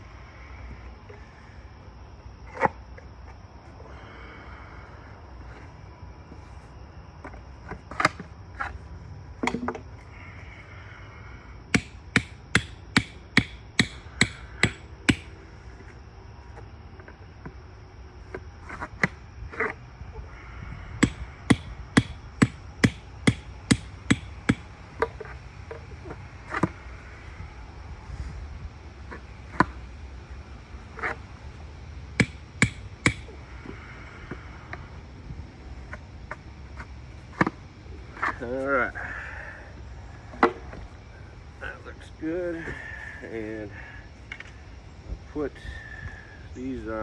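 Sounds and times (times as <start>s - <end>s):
hammer strikes: 11.7s - 15.3s, 21.0s - 24.6s, 32.2s - 33.2s.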